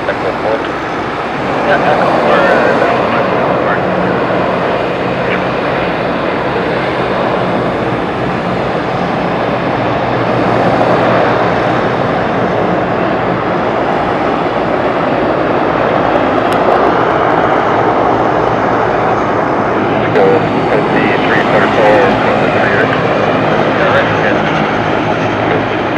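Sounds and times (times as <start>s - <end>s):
turboprop engines droning: 0.0s - 25.9s.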